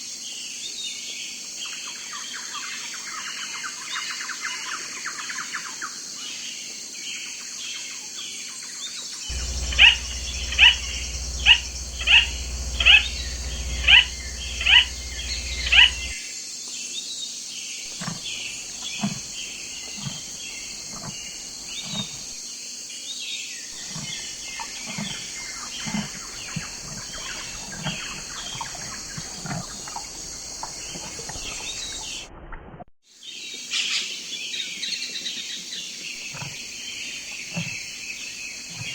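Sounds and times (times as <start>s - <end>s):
faint repeated bird calls: 9.3s - 16.2s.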